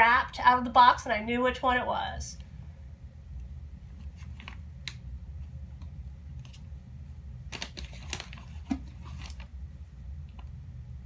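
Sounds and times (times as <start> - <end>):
steady low hum: 0.0 - 11.0
packing clicks and rustles: 7.5 - 9.5.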